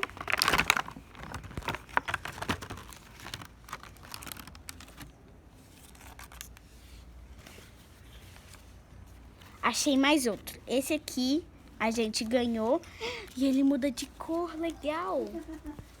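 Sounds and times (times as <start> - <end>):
plastic packaging crinkling: 0.0 - 6.6.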